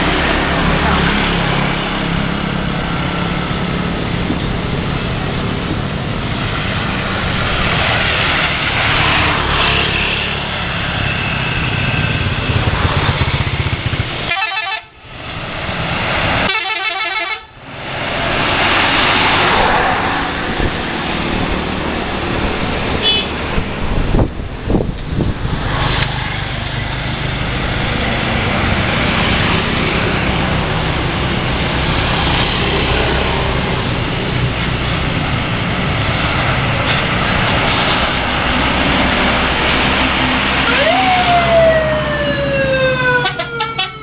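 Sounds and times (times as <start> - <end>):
low bus engines: 0.0 - 44.0
multi-tone musical bus horns: 14.2 - 15.0, 16.4 - 17.6, 23.0 - 23.4, 42.8 - 44.0.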